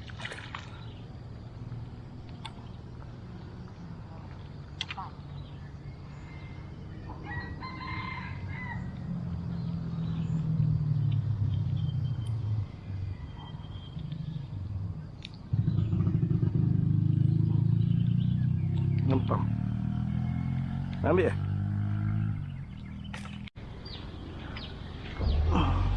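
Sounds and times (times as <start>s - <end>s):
passing vehicle engine hum: 0.8s - 25.9s
rooster crowing: 6.2s - 9.2s.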